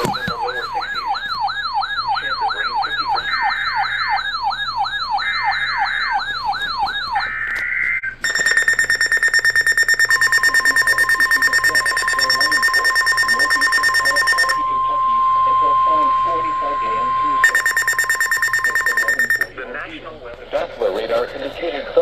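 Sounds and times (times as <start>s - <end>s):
high beep: 0.0s - 7.4s, 8.2s - 19.6s
electronic siren sweeping: 0.0s - 19.5s
low tone: 13.3s - 19.5s.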